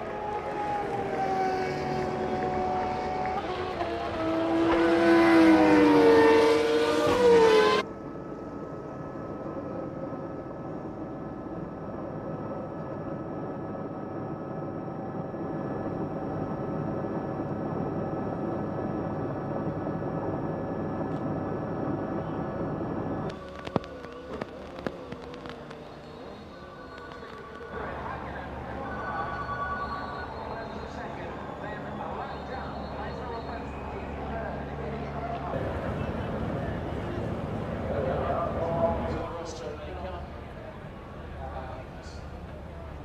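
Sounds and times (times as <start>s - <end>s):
racing engines revving: 0.0s - 7.9s
dull steady drone: 0.0s - 43.0s.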